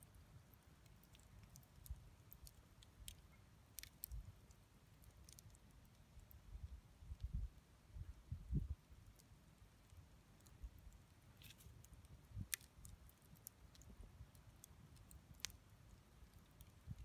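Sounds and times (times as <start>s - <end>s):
bonfire crackling: 0.0s - 7.6s, 8.8s - 17.0s.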